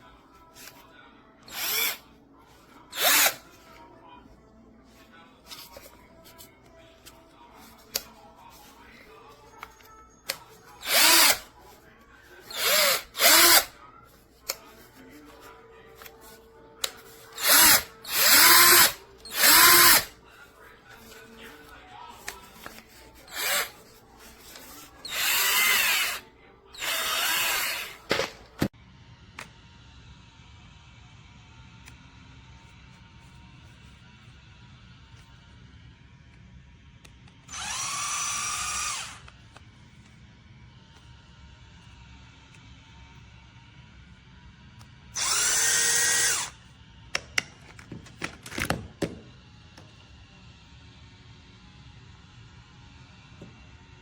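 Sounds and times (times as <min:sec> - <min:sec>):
cordless drill motor whine: 0:01.5 - 0:02.0, 0:02.9 - 0:03.4, 0:10.3 - 0:11.5, 0:12.5 - 0:13.7, 0:17.1 - 0:20.1, 0:22.6 - 0:23.7, 0:24.5 - 0:26.2, 0:26.8 - 0:28.1, 0:37.5 - 0:39.3, 0:45.2 - 0:46.6.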